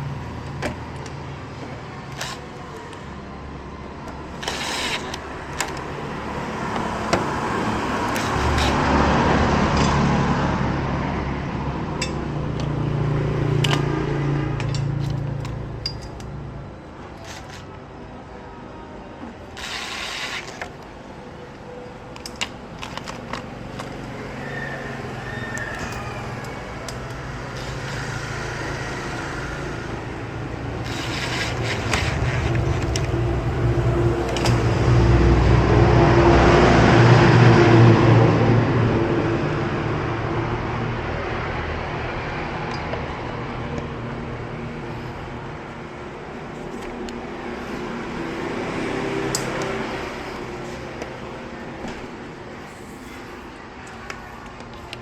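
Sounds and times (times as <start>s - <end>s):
vehicle passing by: 5.8s - 15.8s, 23.4s - 53.8s.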